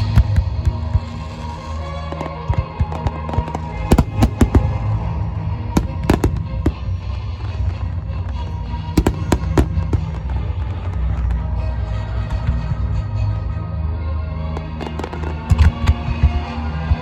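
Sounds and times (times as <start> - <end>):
fireworks bursting in sharp bangs: 3.9 - 5.1, 5.8 - 7.5, 8.3 - 11.4.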